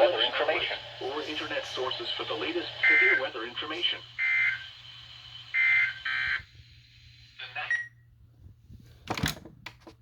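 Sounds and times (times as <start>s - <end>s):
raspy alternating data tone bursts: 0.0s - 6.5s.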